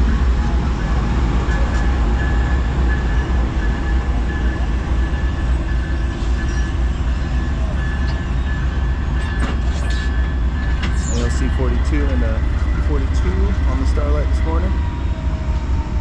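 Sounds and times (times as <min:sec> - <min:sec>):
diesel locomotive rumble: 0:00.0 - 0:16.0.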